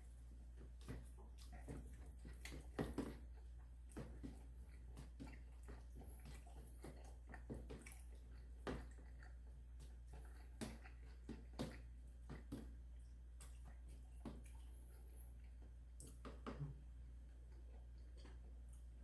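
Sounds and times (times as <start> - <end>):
wet squishy chewing: 0.0 - 19.0.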